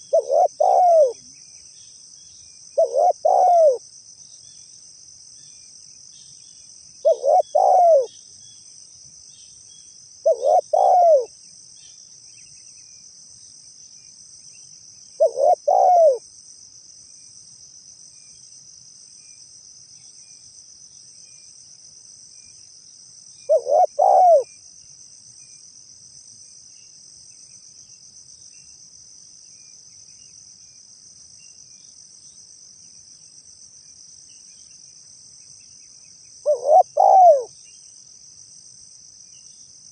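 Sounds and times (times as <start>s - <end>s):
dove cooing: 0.0s - 1.2s, 2.8s - 3.8s, 7.0s - 8.1s, 10.2s - 11.3s, 15.2s - 16.2s, 23.5s - 24.5s, 36.4s - 37.5s
high insect trill: 0.0s - 39.9s.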